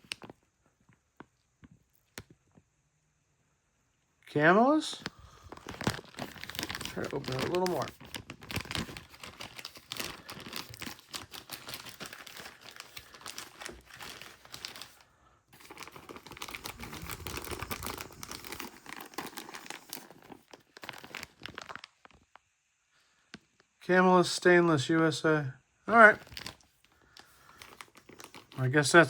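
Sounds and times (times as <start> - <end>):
plastic bag crinkling: 0.0 - 0.4, 5.0 - 22.4, 25.9 - 29.0.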